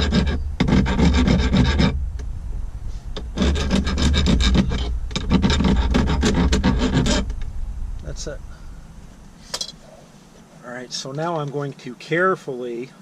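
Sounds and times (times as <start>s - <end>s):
hand file rasping on metal: 0.0s - 2.0s, 3.2s - 7.3s.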